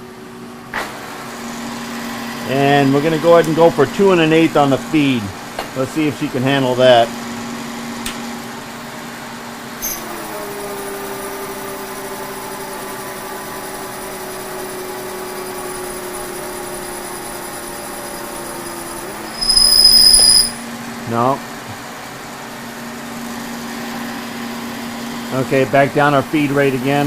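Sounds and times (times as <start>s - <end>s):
machine hum: 15.8s - 21.0s
high-pitched squeal: 18.2s - 20.8s.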